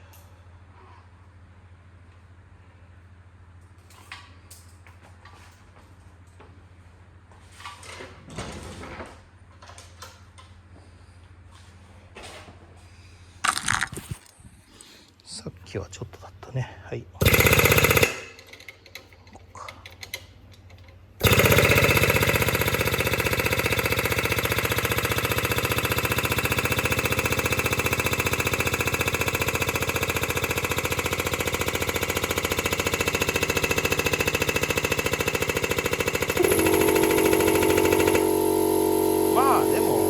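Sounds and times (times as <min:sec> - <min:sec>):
air compressor chugging: 0:17.2 - 0:19.2, 0:19.8 - 0:40.0
steady hum: 0:36.4 - 0:40.0.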